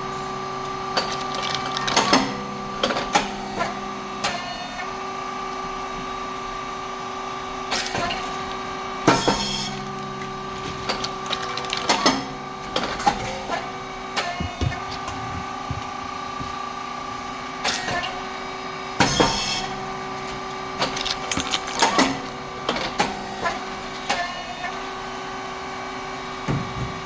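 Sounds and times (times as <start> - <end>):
machine motor hum: 0.0 - 27.0
mechanical clatter and knocks: 0.6 - 4.5, 7.7 - 16.6, 19.0 - 24.4, 26.4 - 27.0.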